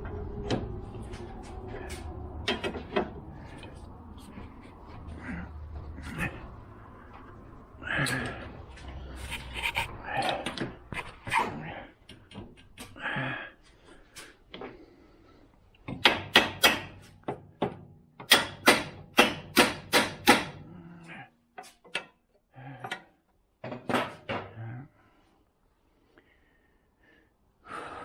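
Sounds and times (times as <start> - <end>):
hammer striking metal: 16.0 - 17.1, 18.2 - 20.6.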